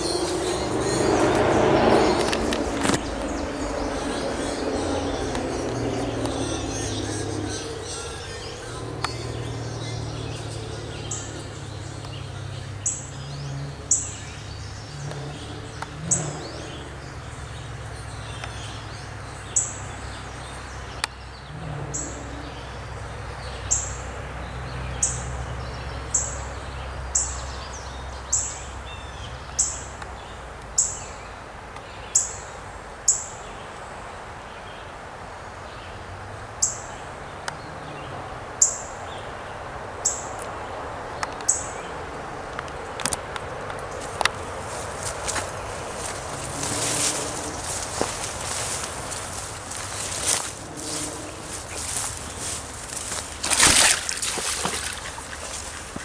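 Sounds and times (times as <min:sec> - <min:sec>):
steady low rumble: 0:00.0 - 0:13.3.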